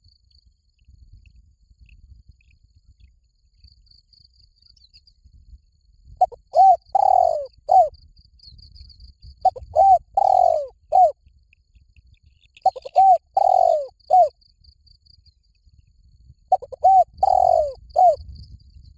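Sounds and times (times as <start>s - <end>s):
dove cooing: 6.2s - 7.9s, 9.4s - 11.2s, 12.6s - 14.3s, 16.5s - 18.2s.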